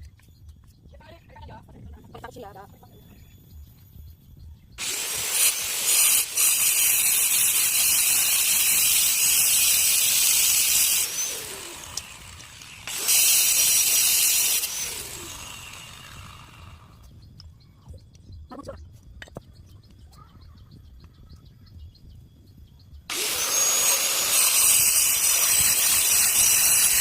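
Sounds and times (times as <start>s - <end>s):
power tool grinding stone: 4.8s - 17.0s, 23.1s - 27.0s.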